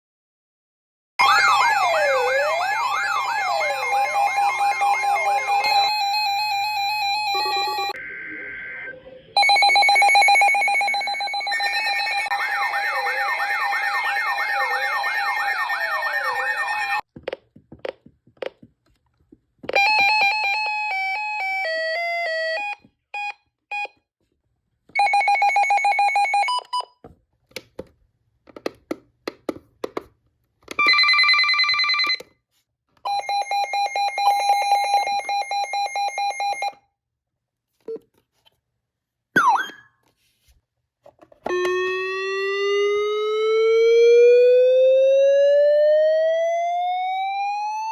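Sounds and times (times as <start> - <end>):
electronic siren tones: 1.2 - 17.0, 39.4 - 39.9, 41.5 - 47.9.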